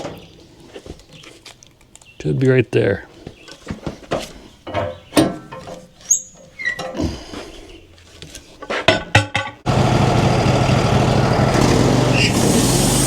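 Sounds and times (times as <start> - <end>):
short squeaks: 6.0 - 6.9, 12.1 - 13.0.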